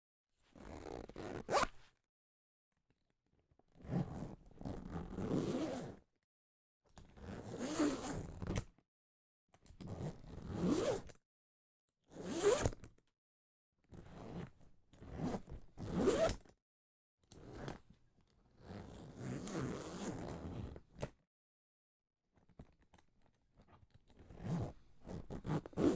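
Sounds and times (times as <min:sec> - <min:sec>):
zipper opening and closing: 0:00.5 - 0:01.9, 0:03.7 - 0:06.0, 0:07.2 - 0:08.6, 0:09.9 - 0:11.1, 0:12.2 - 0:12.8, 0:14.0 - 0:16.5, 0:18.6 - 0:21.0, 0:24.2 - 0:25.9.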